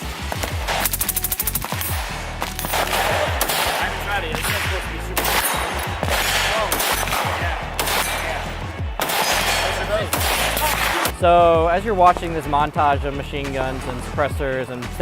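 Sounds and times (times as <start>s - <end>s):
machine-gun and rifle fire: 0.0s - 11.1s
music with deep falling bass: 0.0s - 15.0s.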